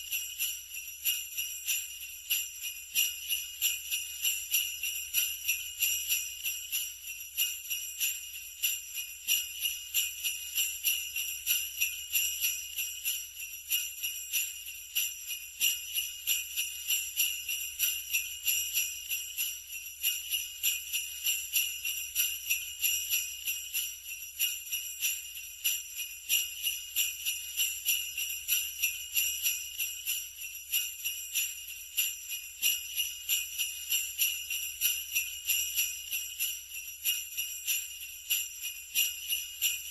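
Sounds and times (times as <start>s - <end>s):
sleigh bells jingling: 0.0s - 39.9s.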